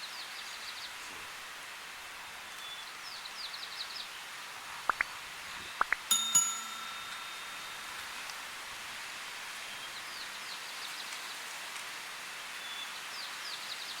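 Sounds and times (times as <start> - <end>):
outdoor hiss: 0.0 - 14.0
high bird chirps: 4.9 - 8.2
bell-like chime: 6.1 - 8.7.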